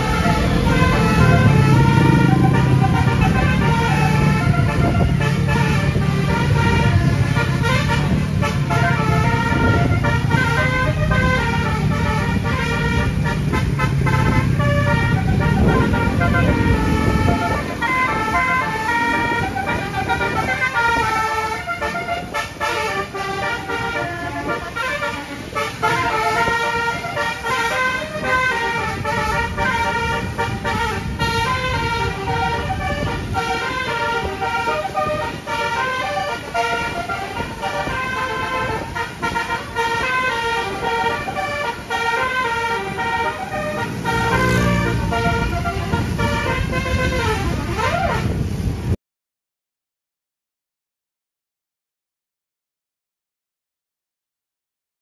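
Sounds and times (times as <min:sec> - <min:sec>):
low engine rumble: 0:00.0 - 0:48.4
melodic bus horn toots: 0:00.0 - 0:49.0.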